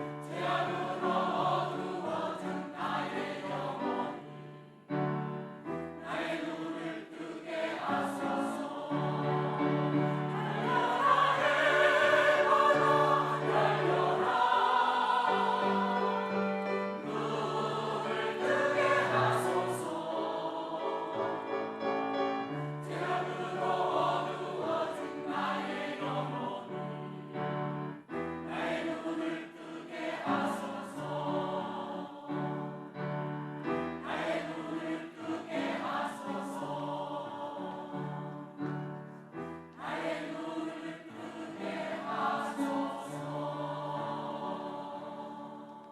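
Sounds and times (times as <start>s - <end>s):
church choir singing: 0.0s - 45.9s.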